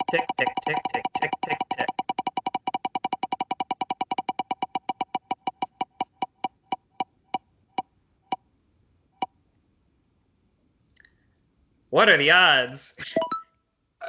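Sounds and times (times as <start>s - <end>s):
prize wheel ticking: 0.0s - 7.4s.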